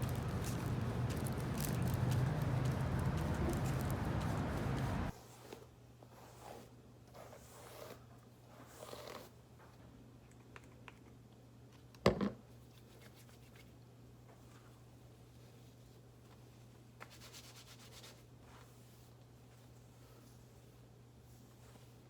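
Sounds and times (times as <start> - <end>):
low steady hum: 0.0 - 5.1
rushing noise: 0.0 - 5.1
soft rustles and scrapes: 0.0 - 10.0, 12.5 - 22.0.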